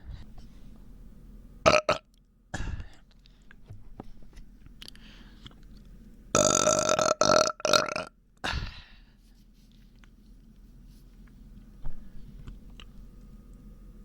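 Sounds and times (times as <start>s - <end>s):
person burping: 1.7s - 2.0s, 6.4s - 8.9s.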